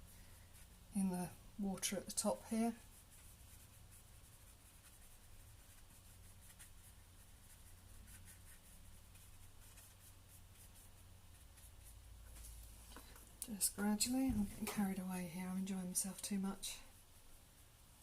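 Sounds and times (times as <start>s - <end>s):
low room tone hum: 0.0s - 18.0s
paintbrush dabbing on canvas: 1.7s - 15.1s.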